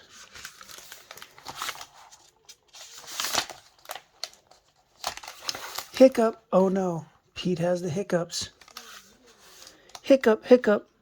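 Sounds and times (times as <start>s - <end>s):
paper pages rustling: 0.0s - 6.7s, 8.5s - 10.1s.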